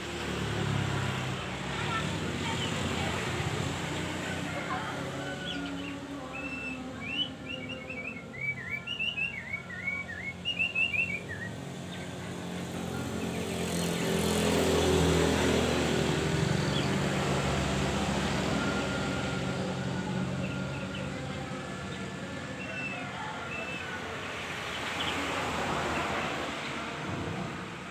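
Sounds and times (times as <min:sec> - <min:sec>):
songbird high chirping: 0:05.2 - 0:14.5, 0:16.5 - 0:17.6.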